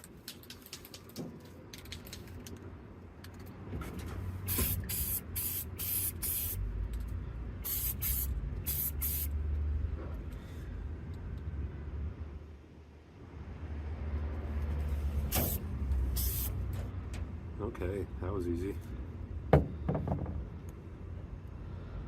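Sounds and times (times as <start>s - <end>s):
spray can hissing bursts: 4.4s - 6.6s, 7.6s - 9.4s, 15.3s - 16.7s.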